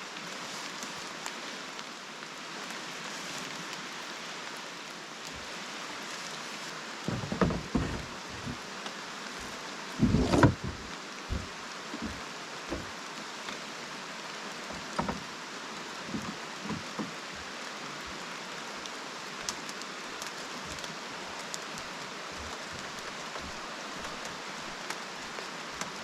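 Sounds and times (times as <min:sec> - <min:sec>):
steady rain: 0:00.0 - 0:26.0
dull thumps: 0:07.1 - 0:08.6, 0:10.0 - 0:12.9, 0:14.7 - 0:15.3, 0:16.1 - 0:17.2.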